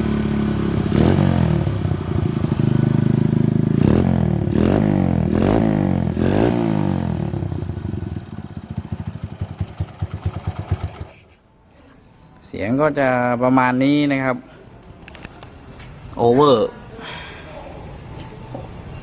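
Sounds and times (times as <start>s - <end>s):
motorcycle loping idle: 1.5s - 4.5s, 7.1s - 11.2s.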